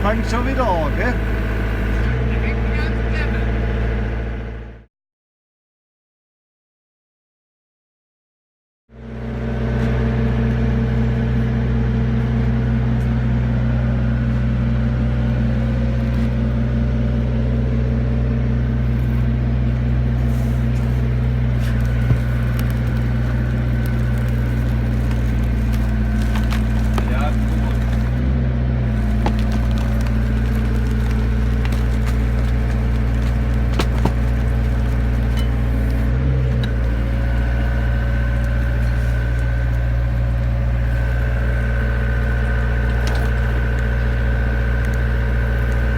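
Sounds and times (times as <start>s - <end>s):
hydraulic power pack humming: 0.0s - 3.5s, 18.6s - 45.9s.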